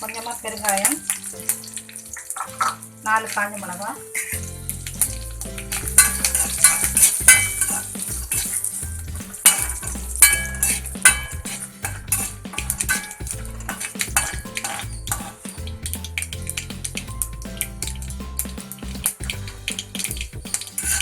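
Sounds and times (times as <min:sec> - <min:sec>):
seeds sizzling in oil: 0:00.0 - 0:16.2
spoon clinking and scraping pan: 0:05.8 - 0:08.7, 0:09.4 - 0:15.5.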